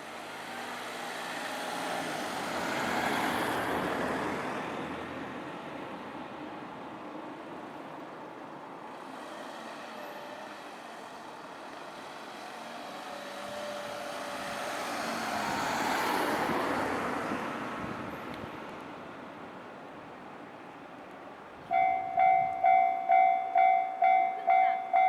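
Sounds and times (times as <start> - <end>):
road vehicle passing: 0.2 - 6.7, 8.7 - 19.4.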